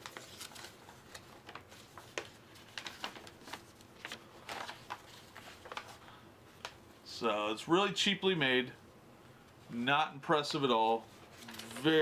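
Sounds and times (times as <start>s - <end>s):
playmat crinkling and rustling: 0.0s - 6.0s, 10.5s - 12.0s.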